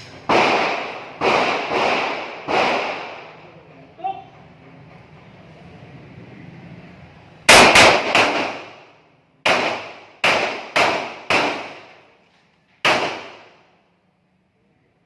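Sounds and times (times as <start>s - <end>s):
pistol shots with echo: 0.1s - 3.4s, 7.5s - 12.0s, 12.8s - 13.7s.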